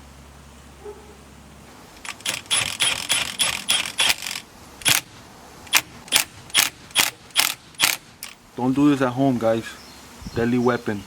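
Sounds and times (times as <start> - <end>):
ratchet wrench clicking: 2.0 - 5.1, 5.7 - 8.4.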